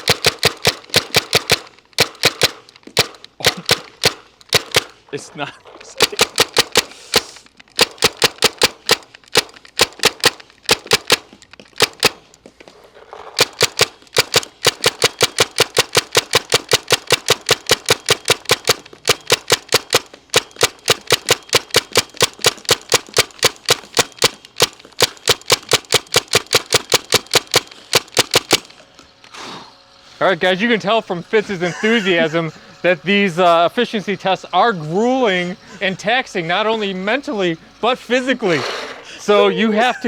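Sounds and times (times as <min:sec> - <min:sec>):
paintball marker rapid shots: 0:00.0 - 0:05.1, 0:05.8 - 0:12.4, 0:13.4 - 0:28.8.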